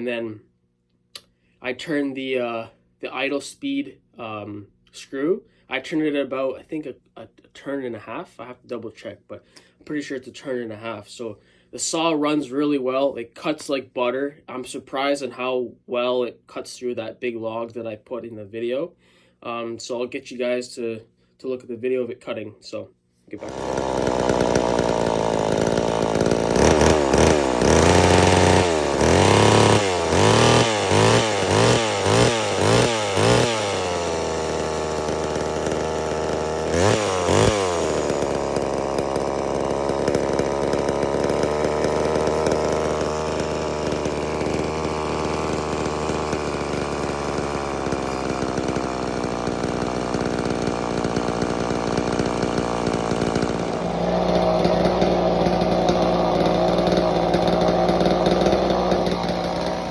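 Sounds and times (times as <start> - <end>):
chainsaw revving: 23.4 - 59.9.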